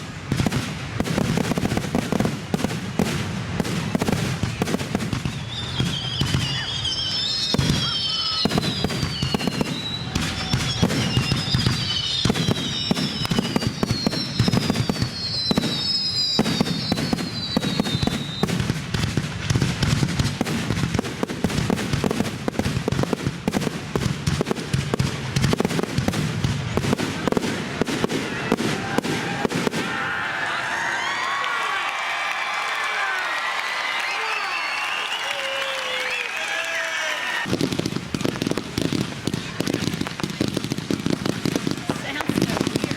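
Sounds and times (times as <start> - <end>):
fireworks bangs and crackles: 0.0 - 30.4, 31.9 - 42.9
firework whistles falling in pitch: 4.4 - 18.7, 33.3 - 37.5.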